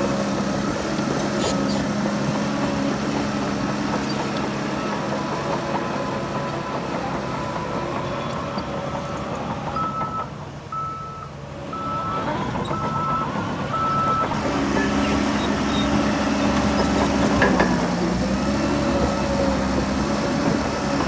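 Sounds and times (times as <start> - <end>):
diesel engines running: 0.0 - 21.0
reversing alarm beeping: 9.8 - 16.1.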